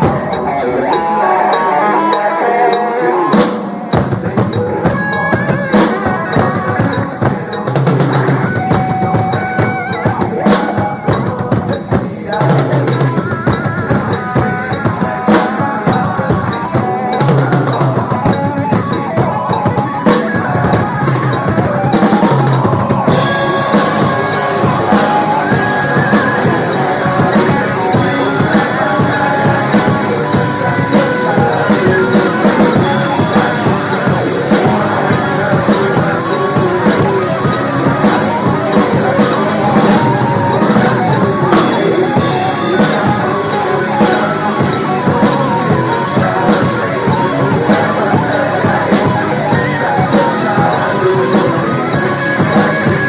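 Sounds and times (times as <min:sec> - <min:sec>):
drum kit playing: 0:00.0 - 0:53.0
recorded rock song: 0:00.0 - 0:53.0.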